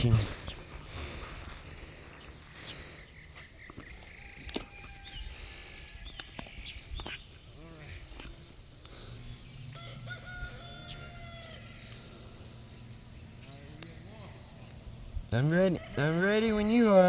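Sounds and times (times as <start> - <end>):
chickens calling: 0.0 - 17.0
rooster crowing: 4.0 - 6.1, 9.7 - 12.0, 15.4 - 17.0.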